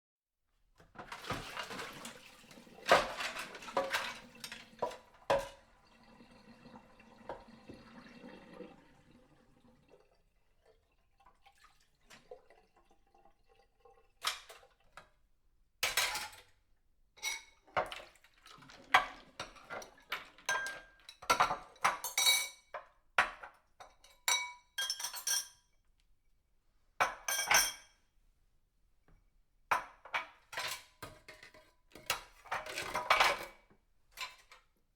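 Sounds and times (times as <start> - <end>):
running water: 1.0 - 14.9
dishes and cutlery clattering: 2.8 - 5.6, 15.8 - 16.5, 17.2 - 18.0, 18.9 - 25.7, 27.0 - 28.0, 29.8 - 34.7
crockery and silverware clinking: 20.5 - 22.7, 24.0 - 25.6, 27.1 - 27.9.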